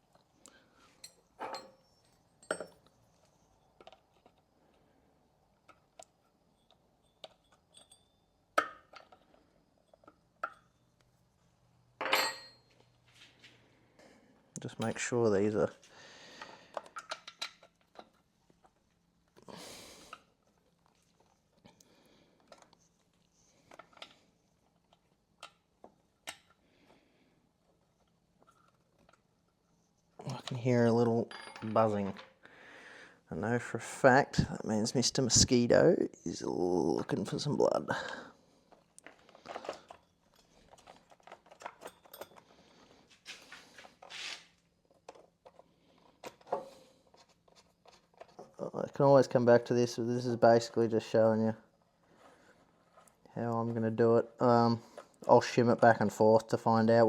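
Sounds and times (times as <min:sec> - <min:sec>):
tools and parts clicking and knocking: 0:00.9 - 0:04.5, 0:05.6 - 0:11.1, 0:12.0 - 0:12.9, 0:16.4 - 0:18.9, 0:22.4 - 0:26.6, 0:30.2 - 0:32.4, 0:38.7 - 0:48.6.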